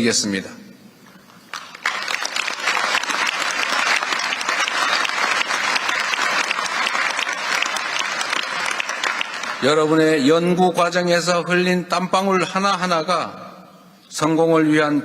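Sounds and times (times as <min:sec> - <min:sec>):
audience applauding: 0:01.4 - 0:10.0.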